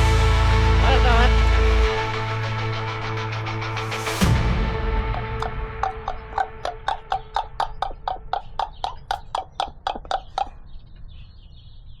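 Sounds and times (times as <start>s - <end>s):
sharp hollow clicks: 3.8s - 11.2s.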